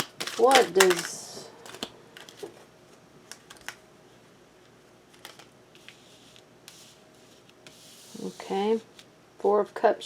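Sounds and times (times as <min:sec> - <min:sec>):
cards clicking and snapping: 0:00.0 - 0:02.5.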